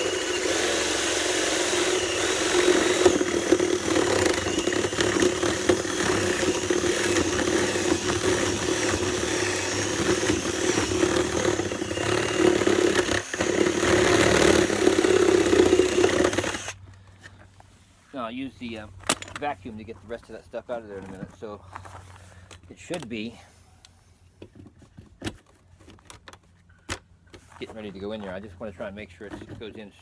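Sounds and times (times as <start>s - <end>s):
electric drill boring into wood: 0.0s - 16.8s.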